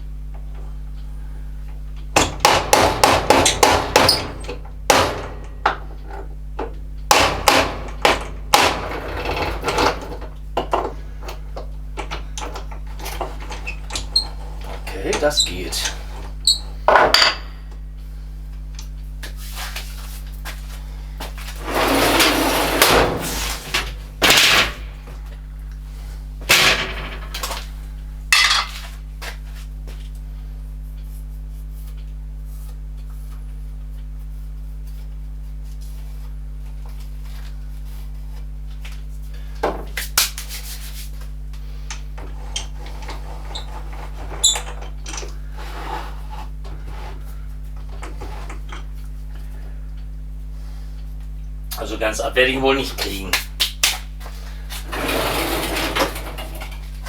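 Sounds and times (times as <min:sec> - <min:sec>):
electrical hum: 0:00.0 - 0:57.0
metal tools clanking: 0:12.0 - 0:17.7, 0:28.3 - 0:28.8.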